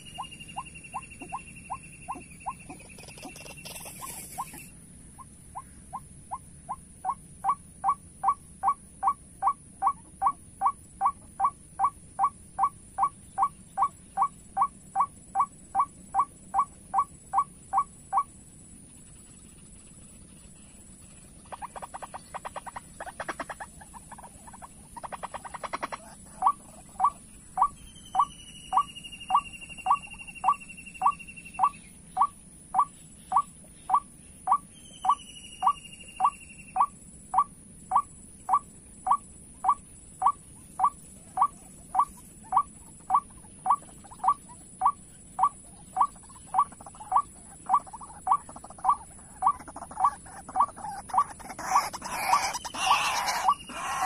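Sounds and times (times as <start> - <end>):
steady very high-pitched tone: 0.0 - 4.7.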